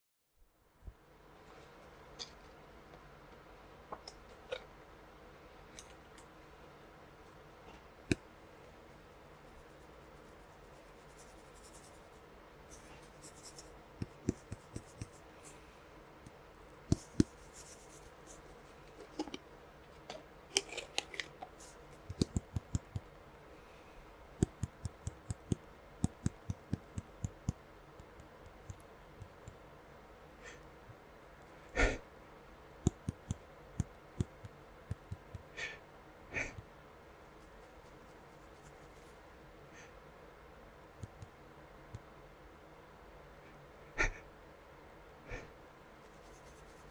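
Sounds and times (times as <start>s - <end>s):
sharp clicks and light taps: 22.0s - 23.1s, 24.4s - 29.6s, 32.9s - 35.5s, 41.0s - 42.1s
person sniffing: 31.8s - 32.0s, 35.5s - 36.6s, 44.0s - 44.2s, 45.3s - 45.6s.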